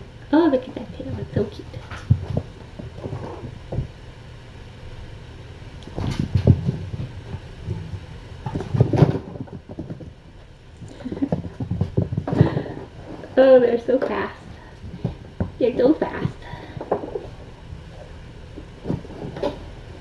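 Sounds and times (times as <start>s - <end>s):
kittens scampering on floor: 1.0s - 4.0s, 5.8s - 20.0s.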